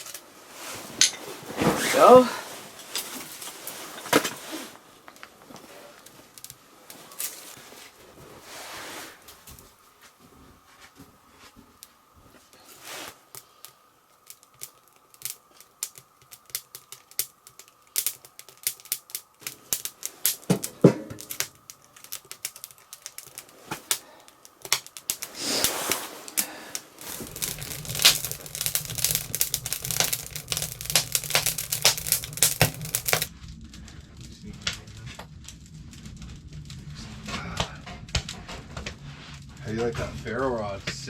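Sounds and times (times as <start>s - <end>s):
low steady hum: 0.0s - 41.0s
ferro rod scraping: 24.7s - 33.4s.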